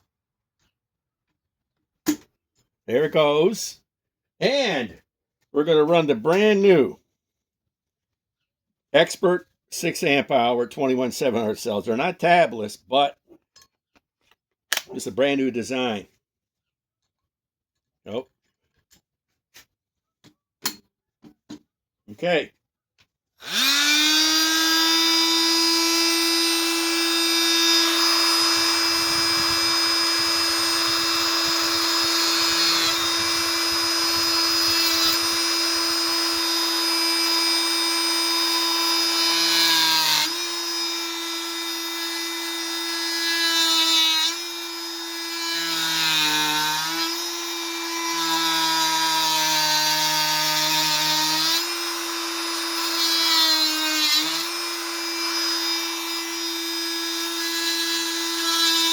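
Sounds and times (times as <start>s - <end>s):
oscillating multi-tool whining: 23.4s - 58.9s.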